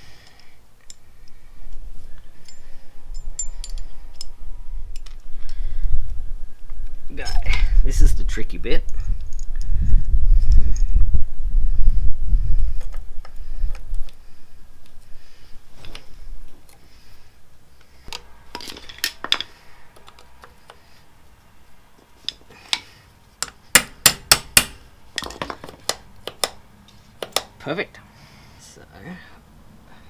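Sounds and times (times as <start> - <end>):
metal parts clicking and clinking: 2.3 - 5.3, 18.0 - 20.8.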